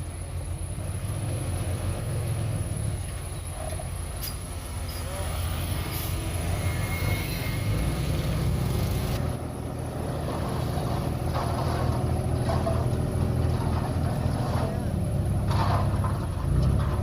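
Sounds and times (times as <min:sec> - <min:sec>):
heavy machinery diesel engines: 0:00.0 - 0:17.0
hiss: 0:04.2 - 0:09.2.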